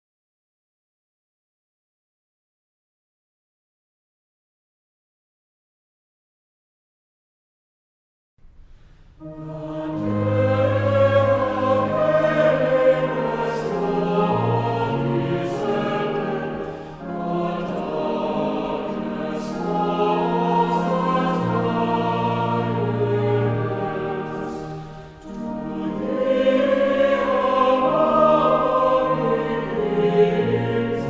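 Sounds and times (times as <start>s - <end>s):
choir singing sustained chords: 8.6s - 31.0s.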